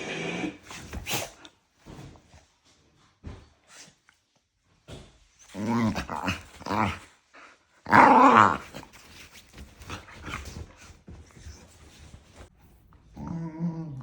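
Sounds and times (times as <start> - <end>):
small dogs growling and yapping: 7.9 - 9.2, 13.1 - 14.0.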